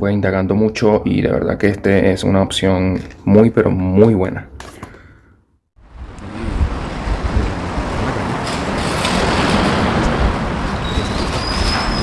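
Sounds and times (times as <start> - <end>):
road traffic passing: 5.8 - 12.0.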